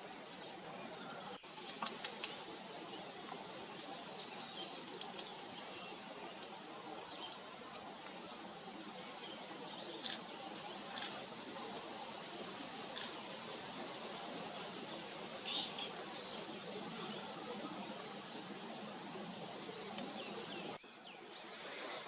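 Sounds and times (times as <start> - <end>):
outdoor hiss: 0.0 - 22.0.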